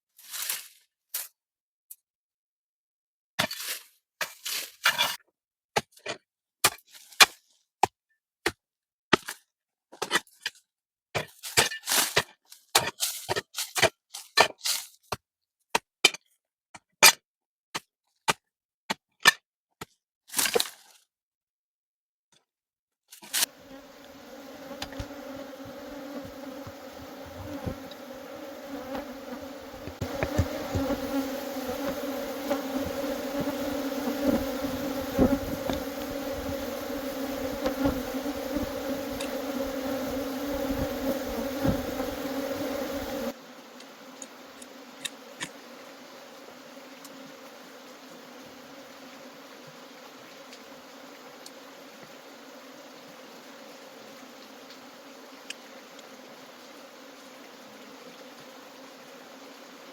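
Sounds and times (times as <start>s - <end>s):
honeybees buzzing: 23.4s - 59.9s.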